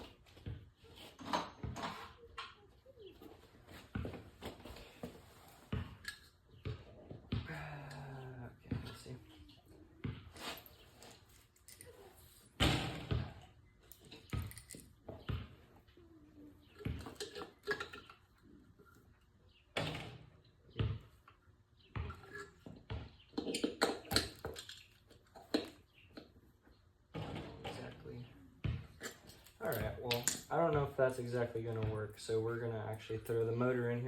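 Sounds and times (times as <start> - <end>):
metal parts and tools clanking: 17.0 - 18.2.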